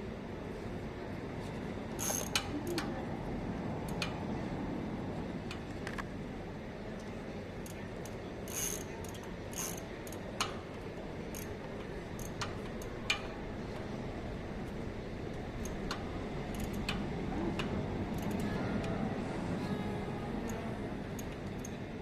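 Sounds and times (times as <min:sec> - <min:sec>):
bicycle chain metallic clicks: 0:02.0 - 0:02.9, 0:07.6 - 0:10.6, 0:11.3 - 0:13.3, 0:15.6 - 0:18.5.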